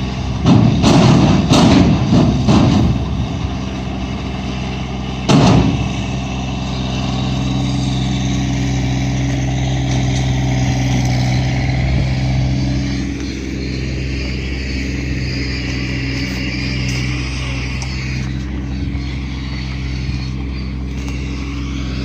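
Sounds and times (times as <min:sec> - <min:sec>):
engine running: 0:00.0 - 0:22.0
thump: 0:00.4 - 0:03.1, 0:05.3 - 0:06.0.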